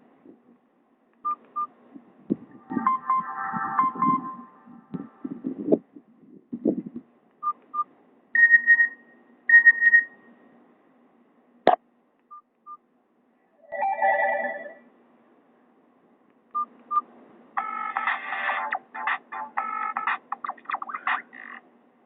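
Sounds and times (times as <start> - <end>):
phone keypad beeps: 8.4 - 10.1.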